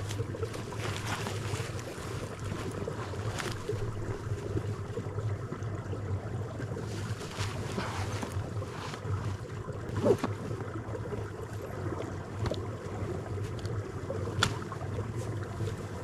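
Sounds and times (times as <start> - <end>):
footsteps crunching in snow: 0.0 - 4.5, 6.8 - 9.3.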